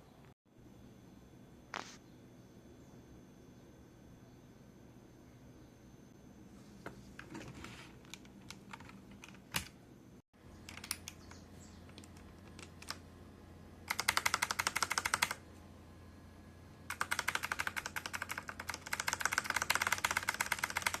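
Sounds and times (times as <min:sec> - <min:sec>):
mechanical keyboard typing: 0:08.1 - 0:09.8, 0:10.6 - 0:13.0, 0:13.8 - 0:15.4, 0:16.9 - 0:21.0.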